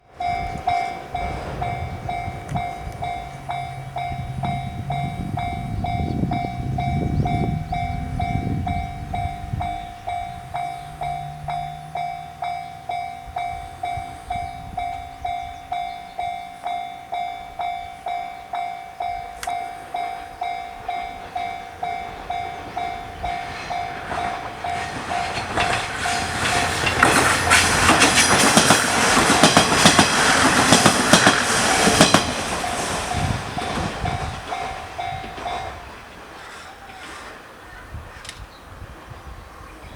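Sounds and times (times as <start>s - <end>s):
train wheel clacks: 0.0s - 37.4s
diesel railcar rumble: 0.0s - 39.9s
low engine hum: 0.2s - 28.1s.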